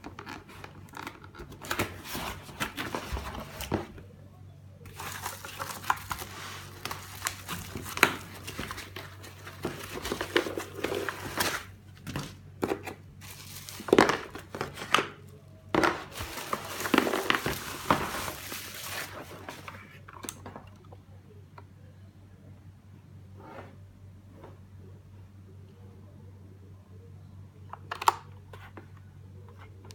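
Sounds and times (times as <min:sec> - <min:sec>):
packaging crinkling and rustling: 0:00.0 - 0:04.0, 0:04.9 - 0:20.6.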